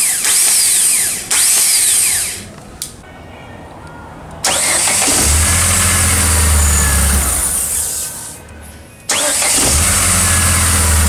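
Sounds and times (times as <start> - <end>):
starter motor whining: 4.4 - 8.1, 9.1 - 11.0.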